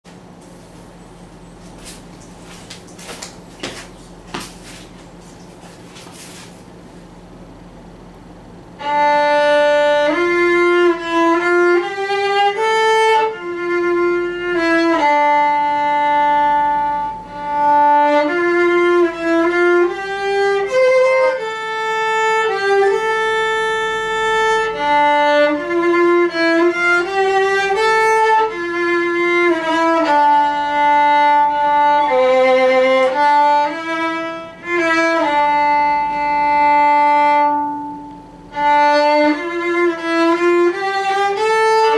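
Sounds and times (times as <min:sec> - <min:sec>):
solo violin slow melody: 0:08.7 - 0:41.9.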